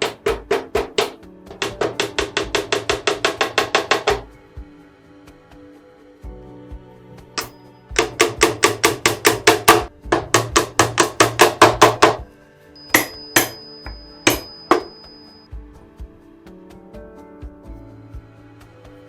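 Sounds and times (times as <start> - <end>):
hammer striking: 0.0 - 4.3, 7.4 - 12.2, 12.8 - 15.5
background music: 0.0 - 19.0.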